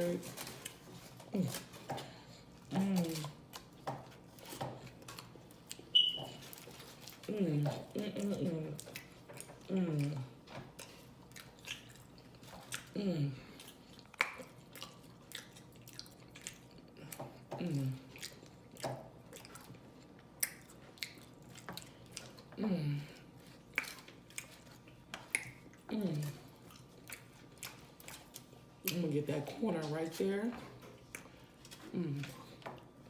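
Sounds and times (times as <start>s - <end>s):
wet chewing and lip smacking: 2.4s - 22.5s, 23.2s - 29.1s, 30.9s - 32.9s.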